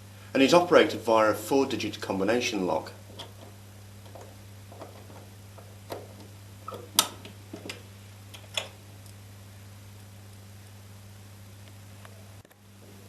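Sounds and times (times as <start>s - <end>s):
steady low hum: 0.0s - 13.0s
light clicks and knocks: 3.1s - 8.8s.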